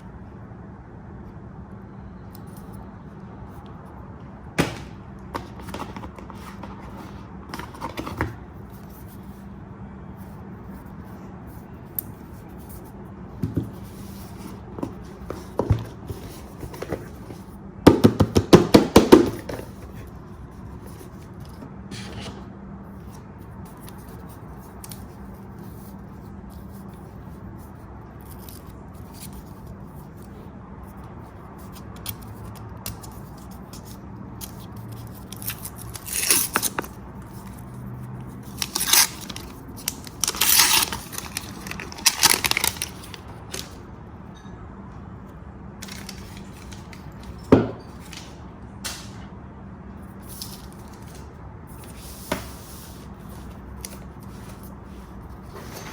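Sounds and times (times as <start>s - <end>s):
box knocking down: 4.6s - 5.0s, 17.9s - 19.7s
packaging rustling and scraping: 4.6s - 9.5s, 12.1s - 17.6s, 18.3s - 22.5s, 33.0s - 43.8s, 45.8s - 49.2s, 50.2s - 55.9s.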